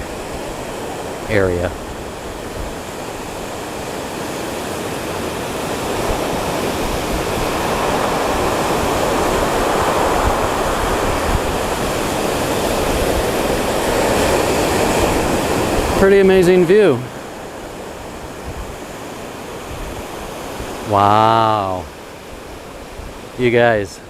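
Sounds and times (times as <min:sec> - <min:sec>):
ocean surf washing ashore: 0:00.0 - 0:24.0.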